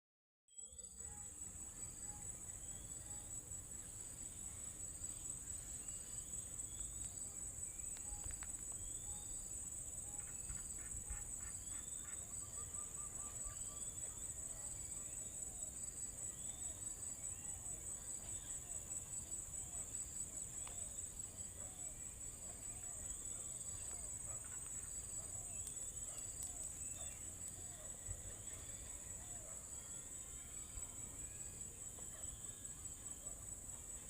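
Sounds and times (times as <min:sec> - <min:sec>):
high-pitched insect drone: 0:26.9 - 0:34.0.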